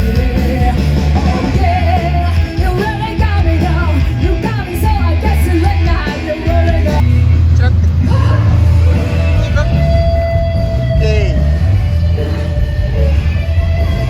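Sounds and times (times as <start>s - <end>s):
loud rock music: 0.0s - 14.0s
heavy bass line: 6.4s - 14.0s.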